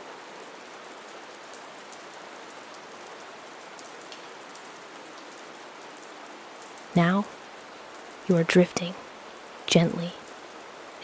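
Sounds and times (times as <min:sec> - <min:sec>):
soft rain hiss: 0:00.0 - 0:11.0.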